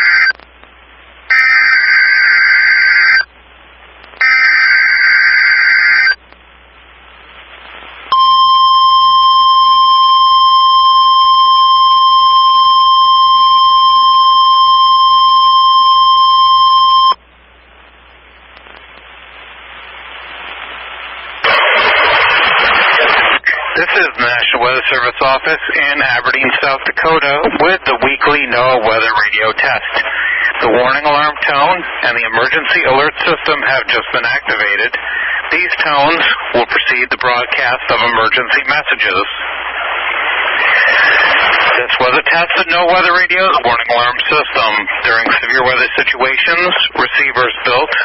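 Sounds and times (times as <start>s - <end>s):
radio hiss: 0.0s - 8.2s, 17.0s - 48.0s
steady warning alarm tone: 1.3s - 3.3s, 4.2s - 6.2s, 8.1s - 17.2s.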